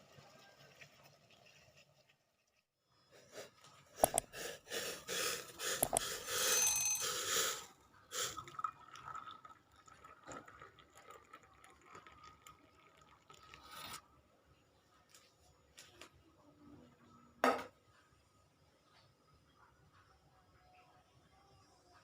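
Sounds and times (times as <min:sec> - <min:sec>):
utensils knocking and clinking: 0:05.8 - 0:07.3.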